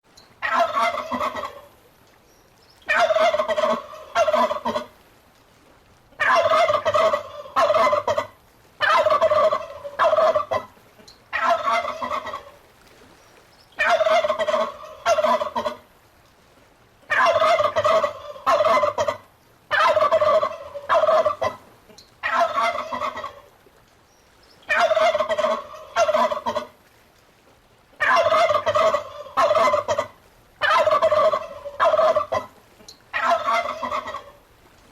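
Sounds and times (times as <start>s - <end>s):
turkey gobbling: 0.4s - 1.7s, 2.8s - 4.9s, 6.2s - 12.6s, 13.8s - 15.8s, 17.1s - 23.5s, 24.7s - 26.7s, 28.0s - 34.4s.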